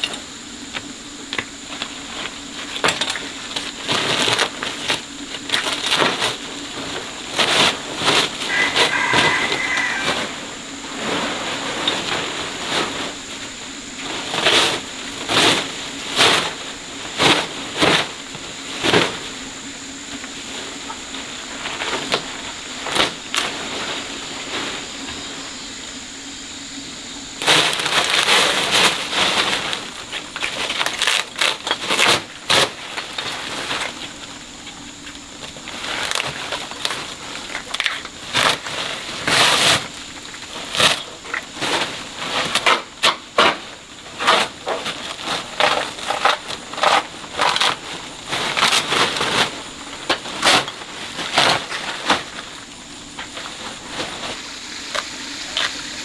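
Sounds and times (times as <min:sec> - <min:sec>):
wooden boards cracking and clattering: 0:27.4 - 0:34.4, 0:35.4 - 0:54.2.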